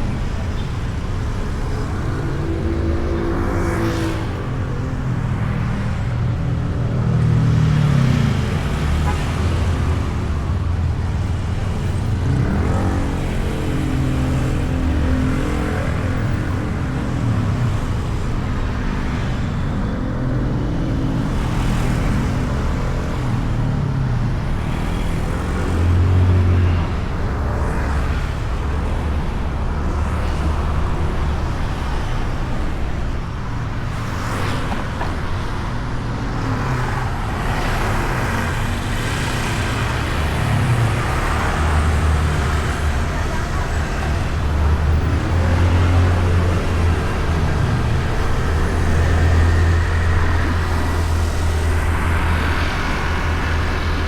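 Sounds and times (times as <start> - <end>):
road traffic noise: 0.0 - 54.0.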